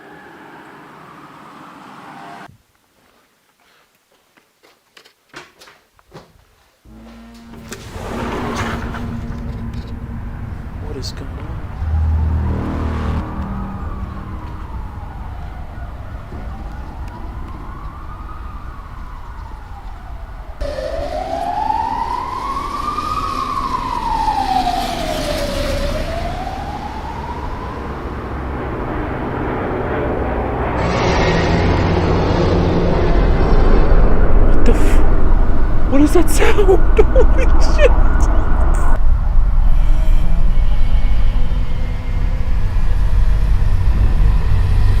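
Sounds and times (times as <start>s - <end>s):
siren wailing: 0.0s - 2.5s, 6.9s - 45.0s
low background rumble: 7.5s - 20.6s, 28.0s - 45.0s.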